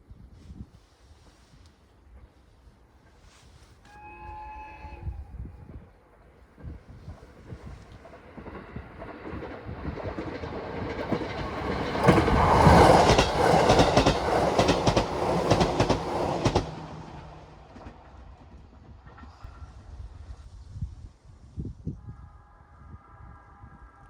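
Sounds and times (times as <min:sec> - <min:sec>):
electric train passing: 0:03.0 - 0:21.2
train wheels clacking over rail joints: 0:07.1 - 0:19.7.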